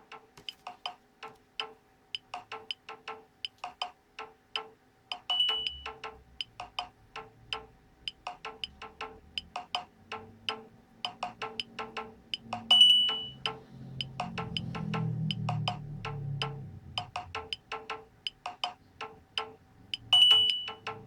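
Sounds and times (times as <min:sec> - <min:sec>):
electronic phone ringtone: 0:05.3 - 0:05.9, 0:12.7 - 0:13.5, 0:20.2 - 0:20.8.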